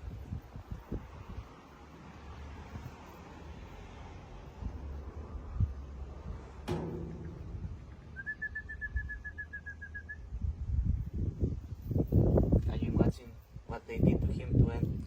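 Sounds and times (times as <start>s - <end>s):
wind rumble: 4.6s - 15.0s
handling noise: 6.7s - 8.5s
sharp knock with ringing tail: 6.7s - 8.9s.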